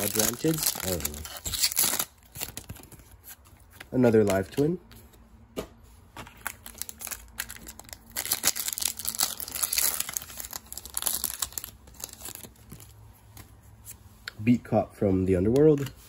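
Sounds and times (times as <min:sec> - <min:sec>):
foil wrapper crinkling and tearing: 0:00.0 - 0:03.0, 0:06.4 - 0:12.8.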